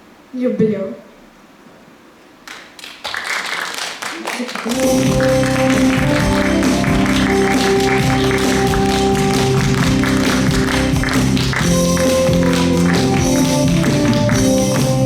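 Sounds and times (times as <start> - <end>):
instrumental music: 4.7 - 15.0
steady tapping beat: 4.7 - 15.0.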